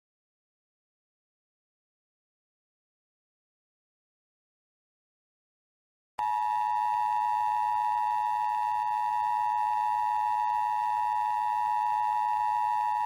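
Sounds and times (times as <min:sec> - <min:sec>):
two-tone alarm: 0:06.2 - 0:13.0.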